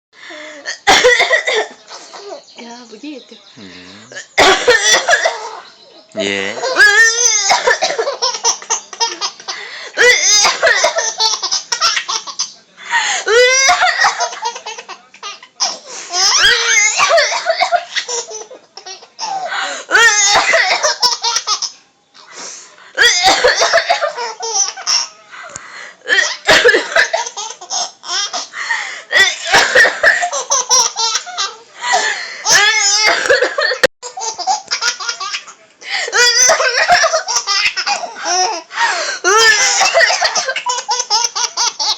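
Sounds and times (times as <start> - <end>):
baby coughing: 0.7 - 2.4, 4.1 - 5.6, 6.5 - 8.6, 19.2 - 21.2, 23.0 - 25.1
baby laughing: 6.2 - 12.6, 23.0 - 25.2, 26.1 - 28.5, 29.2 - 38.6, 39.3 - 41.9.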